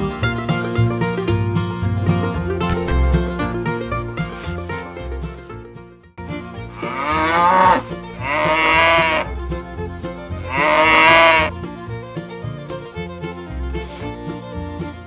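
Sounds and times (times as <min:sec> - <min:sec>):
bluegrass background music: 0:00.0 - 0:15.0
bleating animal calls: 0:06.7 - 0:09.3, 0:10.4 - 0:11.5.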